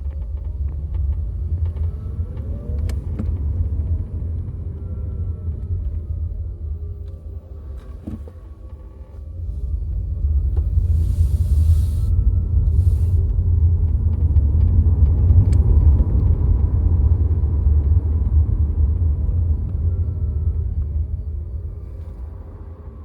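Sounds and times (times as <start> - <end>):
faint creaking ticks: 0.0 - 3.9
low road rumble in car cabin: 0.0 - 23.0.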